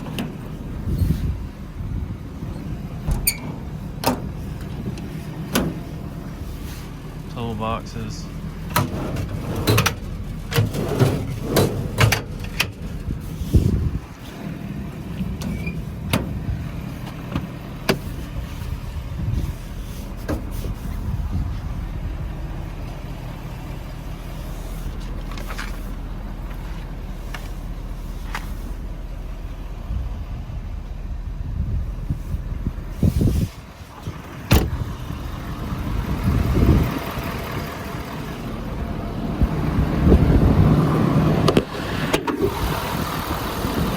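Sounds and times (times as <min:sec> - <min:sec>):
low engine hum: 0:00.0 - 0:43.9
metal toolbox doors banging: 0:08.7 - 0:12.8.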